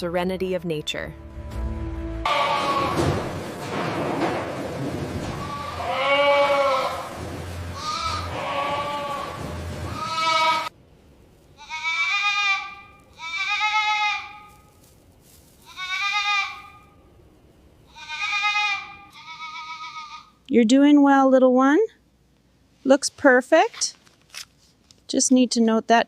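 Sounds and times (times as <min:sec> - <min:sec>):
goats bleating: 0:02.2 - 0:03.2, 0:05.2 - 0:10.7, 0:11.6 - 0:14.5, 0:15.6 - 0:16.8, 0:17.9 - 0:20.3.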